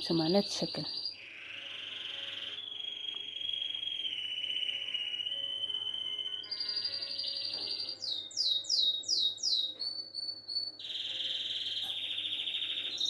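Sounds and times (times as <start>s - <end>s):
songbird trilling: 0.1s - 9.8s.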